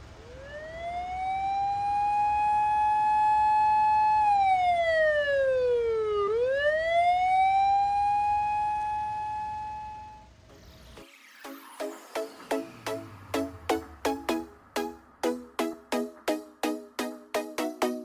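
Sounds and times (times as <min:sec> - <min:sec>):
electronic siren wailing: 0:00.2 - 0:10.4.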